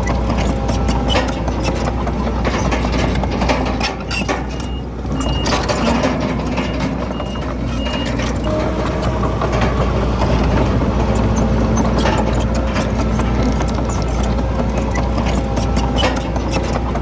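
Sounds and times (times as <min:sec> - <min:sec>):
bulldozer engine running: 0:00.0 - 0:17.0
steel tracks clanking: 0:00.0 - 0:17.0
faint reversing alarm beeps: 0:04.5 - 0:08.6.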